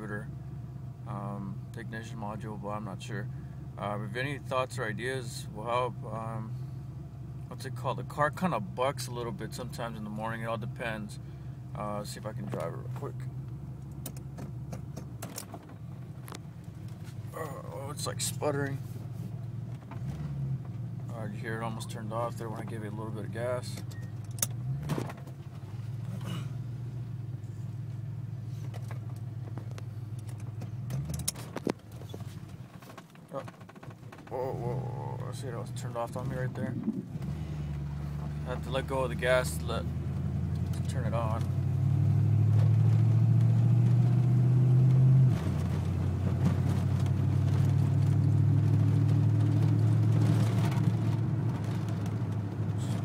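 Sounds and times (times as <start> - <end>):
car engine misfiring: 12.0 - 44.1.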